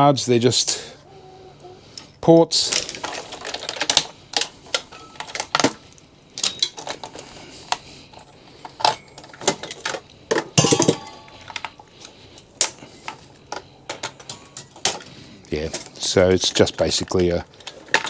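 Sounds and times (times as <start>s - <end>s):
metallic clicks and clinks: 2.0s - 7.4s
metal parts clattering: 2.0s - 11.8s, 12.6s - 18.0s.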